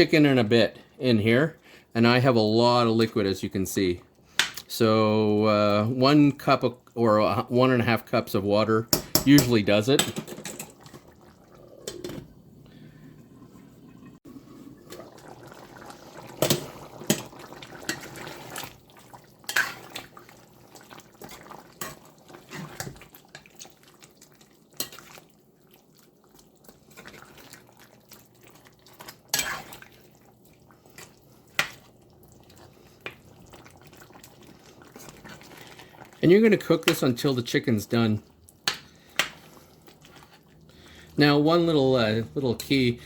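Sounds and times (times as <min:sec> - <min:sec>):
liquid bubbling: 0:10.6 - 0:41.2
spoon scraping metal pot: 0:29.3 - 0:29.8.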